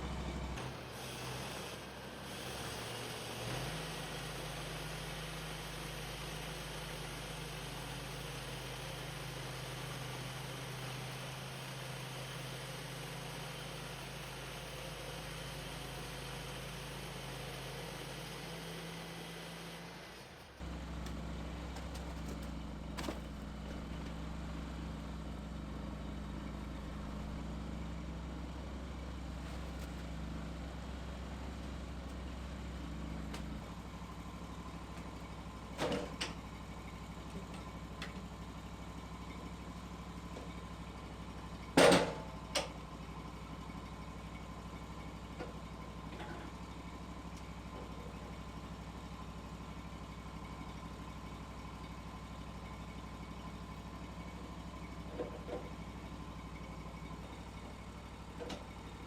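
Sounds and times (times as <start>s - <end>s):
low mechanical hum: 0.0s - 2.2s, 14.0s - 59.0s.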